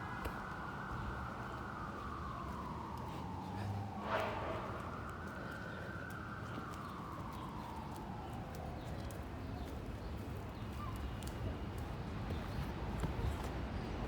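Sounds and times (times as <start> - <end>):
emergency vehicle siren wailing: 0.0 - 10.0.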